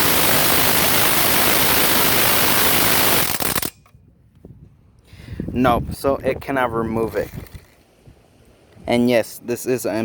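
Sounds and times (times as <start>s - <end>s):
impact driver rattling: 0.0s - 3.9s.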